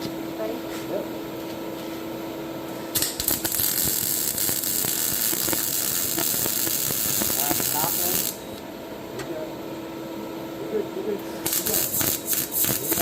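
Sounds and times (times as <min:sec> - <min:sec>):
welding machine hum: 0:02.7 - 0:08.7, 0:11.0 - 0:13.0
welding arc crackling hiss: 0:02.9 - 0:08.6, 0:11.4 - 0:13.0.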